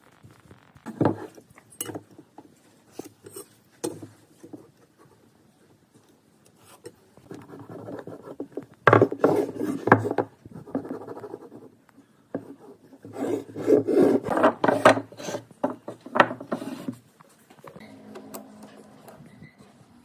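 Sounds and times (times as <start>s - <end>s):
hand tool scraping wood: 13.0s - 17.0s.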